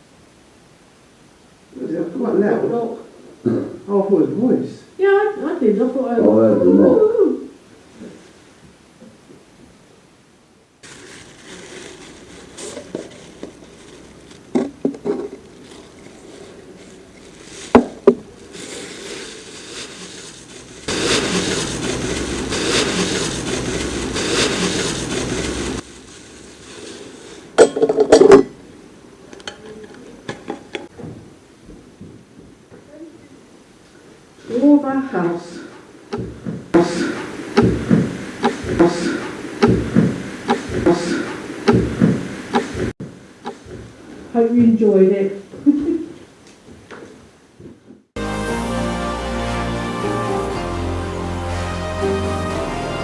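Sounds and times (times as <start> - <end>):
steady rustling: 10.8 - 27.5.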